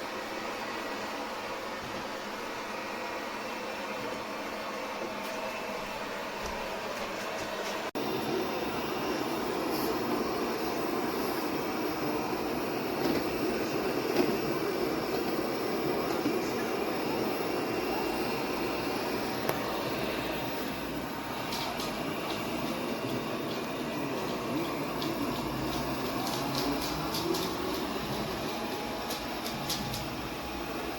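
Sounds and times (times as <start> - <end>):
robot vacuum whirring: 8.0 - 30.9.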